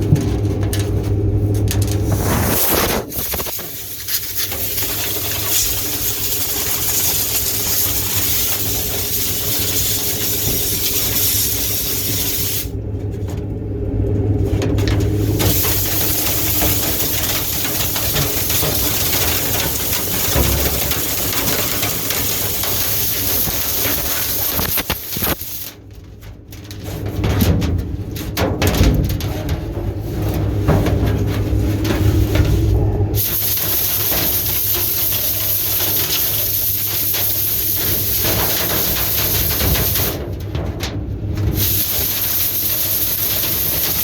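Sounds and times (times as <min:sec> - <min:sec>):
low hum: 0:00.0 - 0:08.1, 0:12.6 - 0:33.4
loud rush of air: 0:02.0 - 0:12.8.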